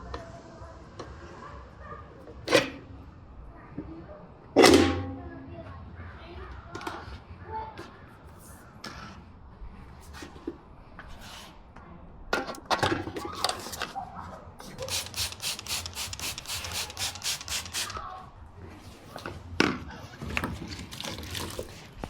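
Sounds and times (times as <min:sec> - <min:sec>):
hand rubbing strokes: 0:14.6 - 0:18.1.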